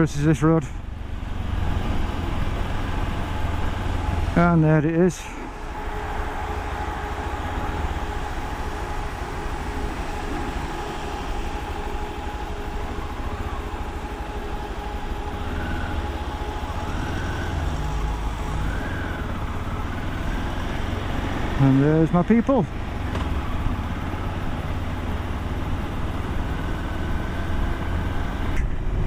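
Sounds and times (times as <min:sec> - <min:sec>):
motorcycle engine: 0:00.0 - 0:28.8
thin steady whine: 0:03.0 - 0:20.9
faint siren wailing: 0:05.3 - 0:28.5
wind rumble on microphone: 0:26.2 - 0:29.0.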